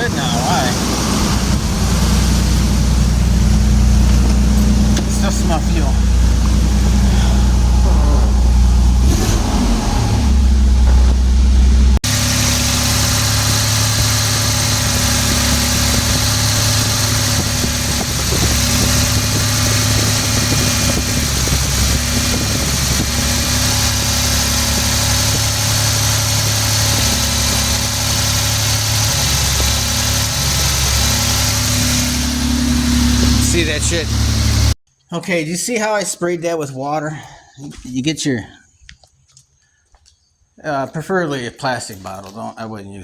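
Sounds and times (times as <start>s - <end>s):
pickup engine idling: 0.0s - 34.8s.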